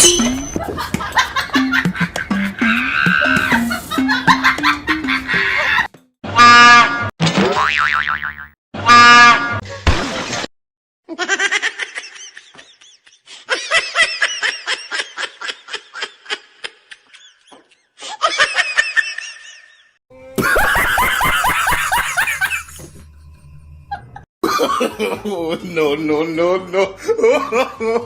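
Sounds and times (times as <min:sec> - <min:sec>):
person laughing: 0:00.6 - 0:05.9.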